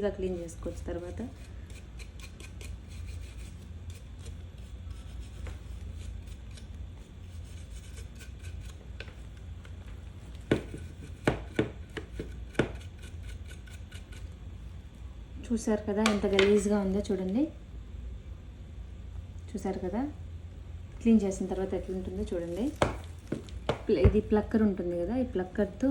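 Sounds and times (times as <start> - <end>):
low steady hum: 0.0 - 25.9
sharp taps and knocks: 22.7 - 24.2.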